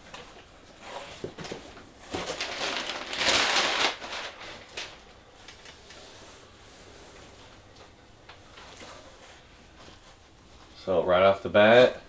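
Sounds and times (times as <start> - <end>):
packaging rustling and tearing: 1.2 - 6.1.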